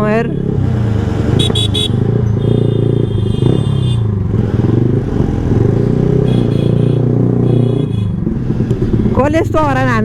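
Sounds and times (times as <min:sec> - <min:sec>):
motorcycle engine revving: 0:00.0 - 0:10.0
high-pitched vehicle horn: 0:01.4 - 0:04.0, 0:06.2 - 0:08.2.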